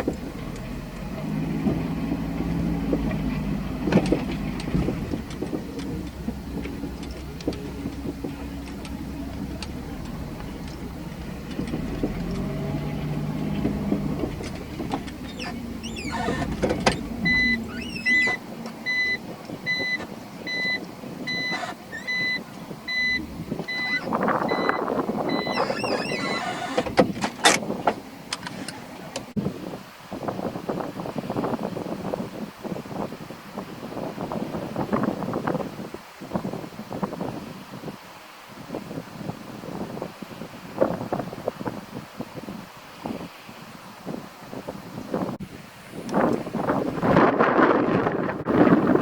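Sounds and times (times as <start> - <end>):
car engine running: 0.0 - 27.2
car warning chime beeping: 16.3 - 26.4.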